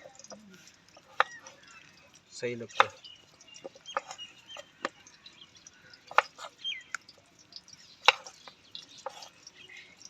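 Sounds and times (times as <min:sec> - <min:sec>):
knife cutting raw potatoes: 0:00.1 - 0:01.6, 0:02.7 - 0:03.0, 0:03.6 - 0:05.0, 0:06.1 - 0:06.6, 0:08.0 - 0:09.4.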